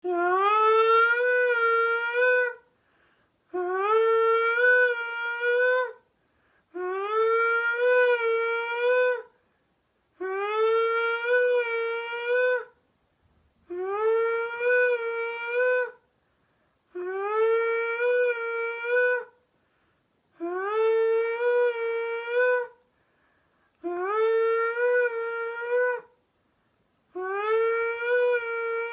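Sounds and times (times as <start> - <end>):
person imitating wipers vocally: 20.4 - 22.8.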